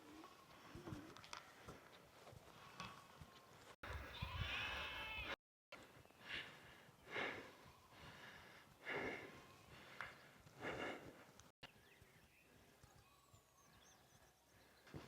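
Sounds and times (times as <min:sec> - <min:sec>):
sheep bleating: 0:03.9 - 0:05.4.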